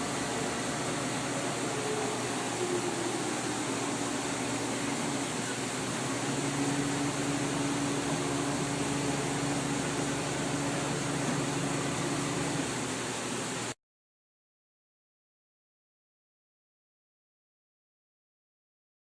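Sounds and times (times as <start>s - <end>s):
higher hum: 0.0s - 13.0s
low hum of axis drive: 0.0s - 13.7s
machine mechanical whir: 0.0s - 13.7s.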